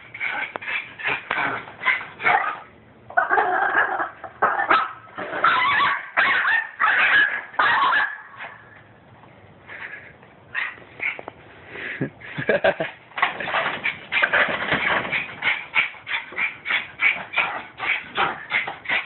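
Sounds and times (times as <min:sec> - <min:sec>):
small dog yapping: 0:03.2 - 0:08.6.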